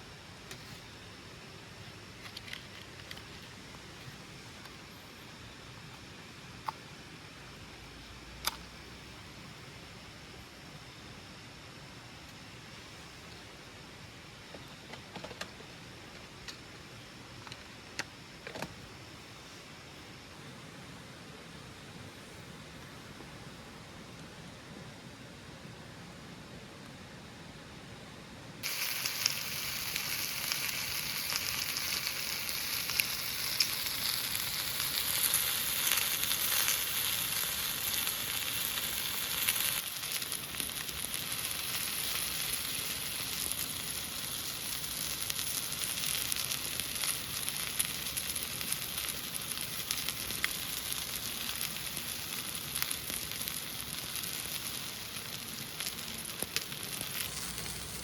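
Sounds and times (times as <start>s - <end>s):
food sizzling in a hot pan: 28.6s - 58.0s.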